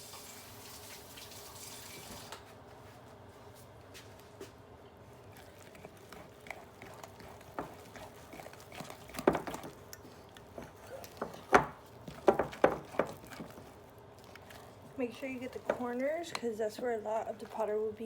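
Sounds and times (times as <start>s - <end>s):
utensil stirring batter in bowl: 5.0s - 18.0s.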